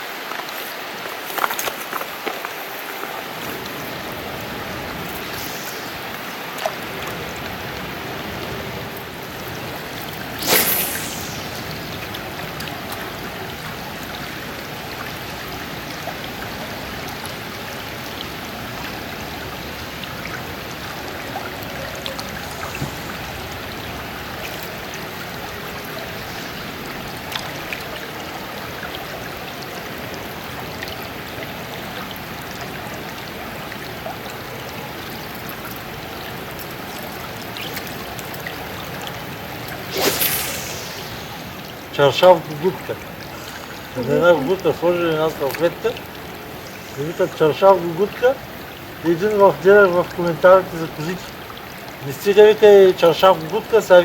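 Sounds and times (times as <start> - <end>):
river water rushing: 0.0 - 50.2
sudden loud burst: 10.4 - 12.1, 21.8 - 24.2, 39.9 - 41.7.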